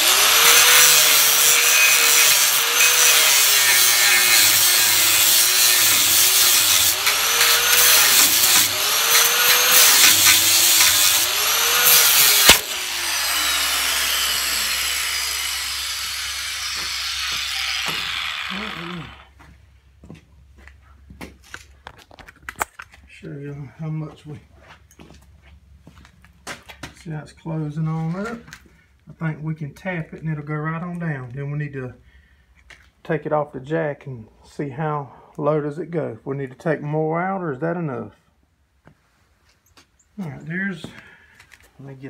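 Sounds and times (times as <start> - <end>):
angle grinder cutting steel: 0.0 - 19.3.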